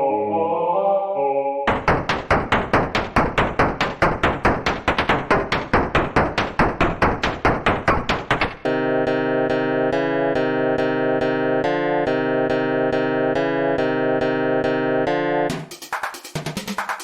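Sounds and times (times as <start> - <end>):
quick tapping: 1.7 - 8.7
electric piano chords: 8.6 - 15.6.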